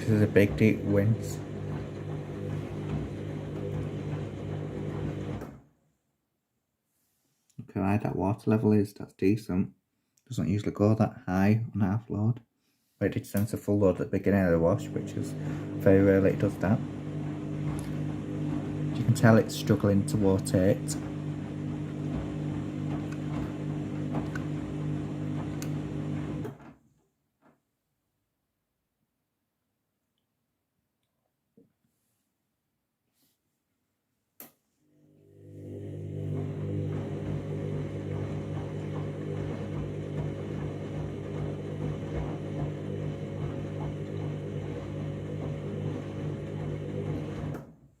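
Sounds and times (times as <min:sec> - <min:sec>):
washing machine drum turning: 0:00.0 - 0:05.5, 0:14.6 - 0:26.6, 0:35.8 - 0:47.6
motor hum: 0:00.0 - 0:05.6, 0:14.6 - 0:26.6, 0:35.0 - 0:47.7
low rumbles of turning drum: 0:36.4 - 0:47.4.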